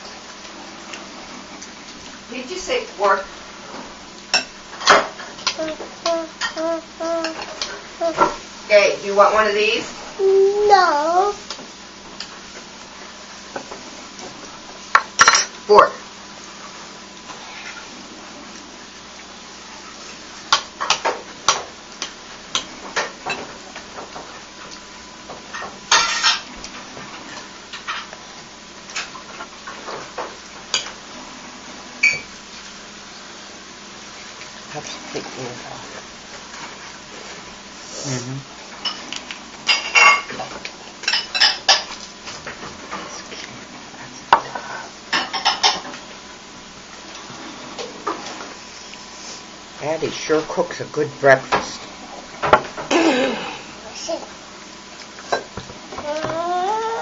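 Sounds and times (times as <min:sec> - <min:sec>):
cutlery clinking against a plate: 0:25.6 - 0:26.5.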